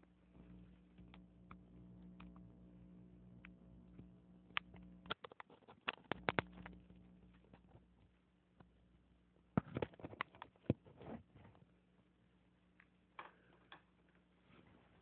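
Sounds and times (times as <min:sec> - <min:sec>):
faint machine hum: 0:00.0 - 0:15.0.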